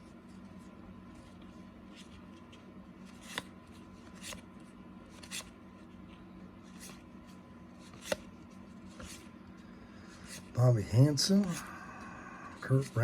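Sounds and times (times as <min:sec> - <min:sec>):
faint steady hum: 0:00.0 - 0:13.0
trading cards flicking: 0:03.1 - 0:04.5, 0:07.9 - 0:08.4.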